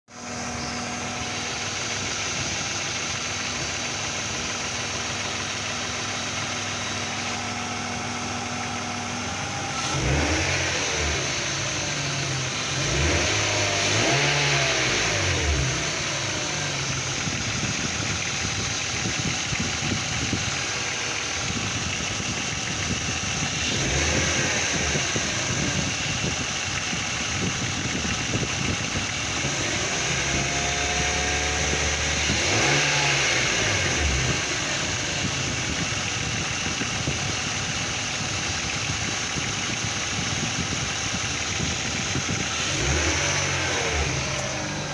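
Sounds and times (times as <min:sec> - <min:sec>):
car engine idling and revving: 0:00.1 - 0:44.9
engine knocking: 0:00.2 - 0:44.9.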